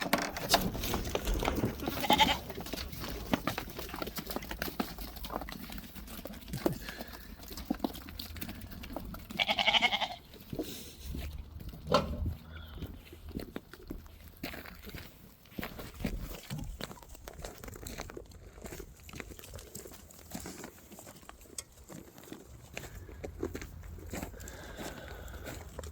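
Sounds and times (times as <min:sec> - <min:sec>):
sheep bleating: 0:01.8 - 0:02.6, 0:09.2 - 0:10.3.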